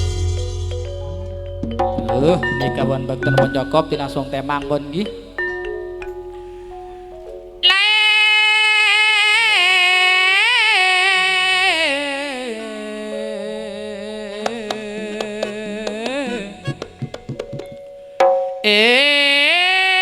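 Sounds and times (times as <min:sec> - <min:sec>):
drums: 0:00.0 - 0:03.7, 0:15.4 - 0:17.9
wavering reed pipe melody: 0:01.8 - 0:08.2, 0:15.1 - 0:17.9.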